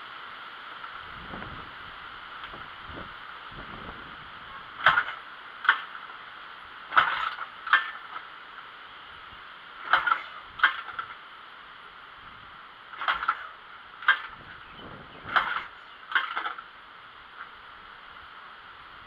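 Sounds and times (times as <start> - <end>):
motorcycle kick-start clunks: 4.8 - 6.0, 6.9 - 8.3, 9.8 - 11.2, 12.9 - 14.5, 15.3 - 16.6.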